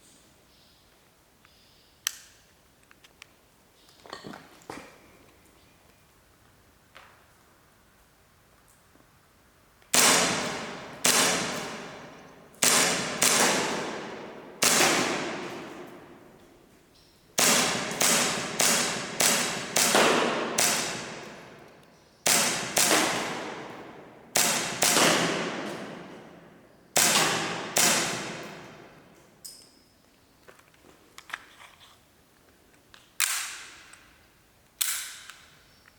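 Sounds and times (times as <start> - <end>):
air pistol shots echoing: 9.9 - 16.6, 17.4 - 29.2.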